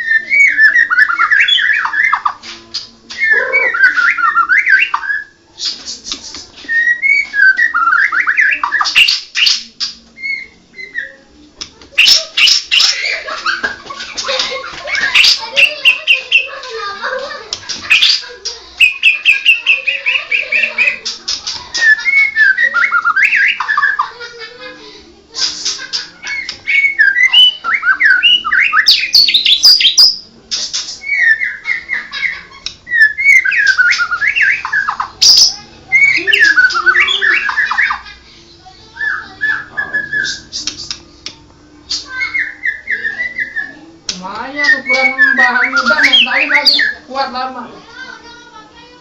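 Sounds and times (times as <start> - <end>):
bird singing whistles and chatter: 0.0 - 11.3, 12.0 - 13.1, 15.0 - 16.6, 18.8 - 24.1, 25.4 - 38.1, 38.8 - 41.1, 41.8 - 47.1.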